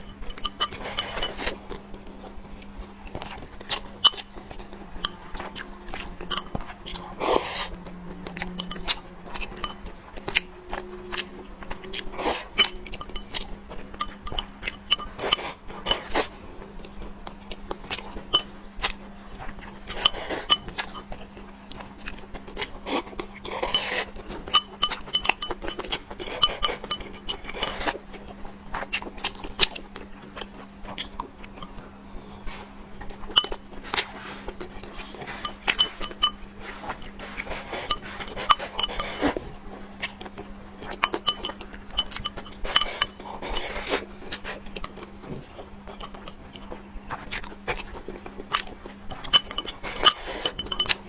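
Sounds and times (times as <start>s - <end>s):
utensils clinking against dishes: 0.0s - 1.7s, 3.2s - 16.3s, 19.6s - 21.2s, 22.1s - 28.0s, 32.4s - 46.2s, 47.4s - 51.0s
chewing: 0.0s - 51.0s
steady low hum: 0.0s - 51.0s.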